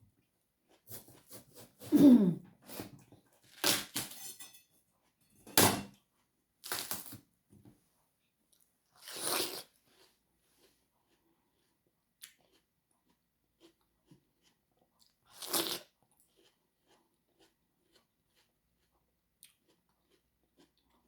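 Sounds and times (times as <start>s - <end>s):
person biting watermelon crunch: 9.0s - 10.1s, 15.0s - 20.9s
faint chewing clicks: 10.0s - 15.3s.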